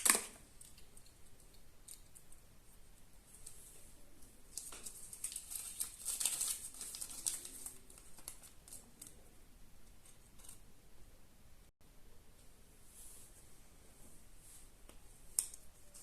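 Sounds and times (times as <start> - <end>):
foil wrapper crinkling: 0.0 - 0.8, 4.5 - 9.2.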